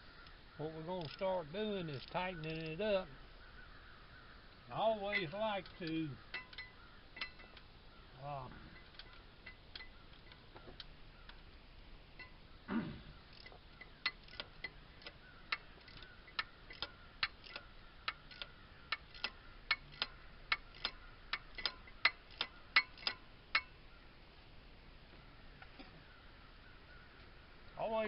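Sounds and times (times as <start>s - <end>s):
ratchet wrench clicking: 1.0s - 1.3s, 5.1s - 7.7s, 8.8s - 11.5s, 13.2s - 23.8s.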